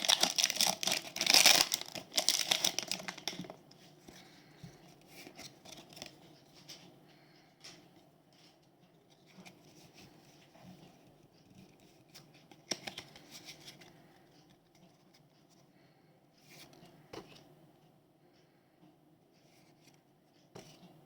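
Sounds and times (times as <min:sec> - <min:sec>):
packaging crackles: 0:00.0 - 0:03.6
soft card rustles: 0:00.0 - 0:06.9, 0:07.6 - 0:15.6.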